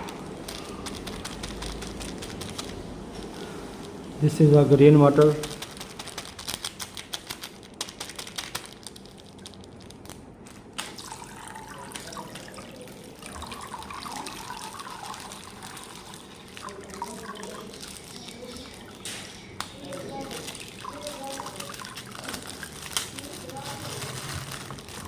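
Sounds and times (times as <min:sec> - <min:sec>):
water trickling and splashing: 0:10.8 - 0:23.6.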